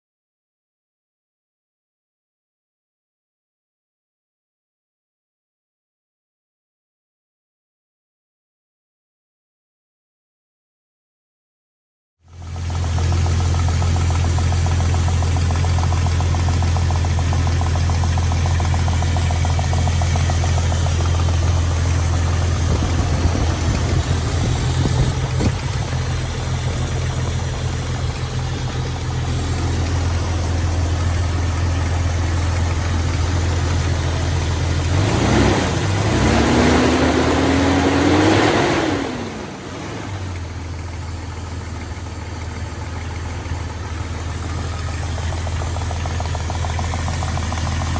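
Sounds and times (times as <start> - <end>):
car engine idling with knock: 12.3 - 37.5, 39.5 - 47.9
engine revving: 12.4 - 40.8.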